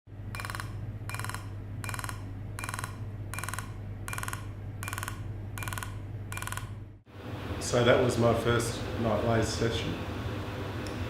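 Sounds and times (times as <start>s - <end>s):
steady low hum: 0.1s - 11.0s
buzzy laser beeps: 0.4s - 6.6s.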